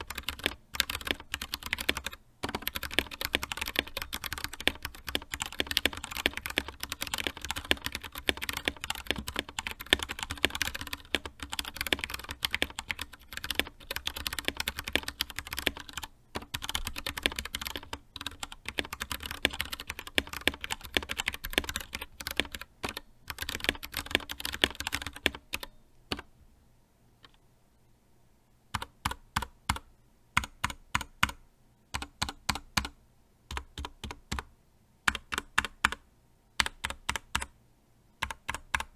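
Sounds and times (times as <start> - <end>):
mechanical keyboard typing: 0.0 - 26.3, 28.7 - 34.5, 35.1 - 36.0, 36.6 - 37.5, 38.2 - 38.9.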